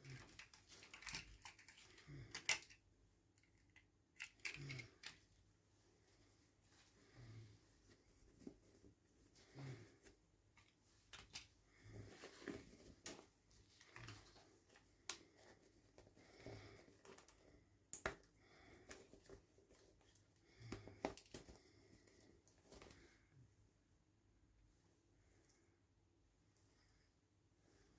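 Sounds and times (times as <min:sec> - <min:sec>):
handling plastic toy packaging: 0:00.0 - 0:05.5.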